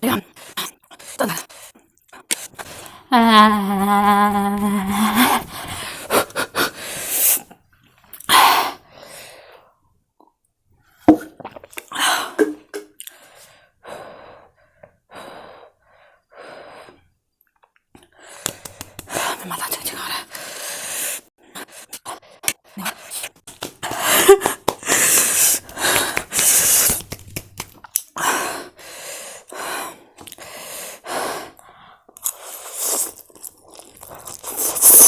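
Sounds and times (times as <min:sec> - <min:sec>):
woman gasping and breathing heavily: 0:02.5 - 0:07.4, 0:23.8 - 0:27.0.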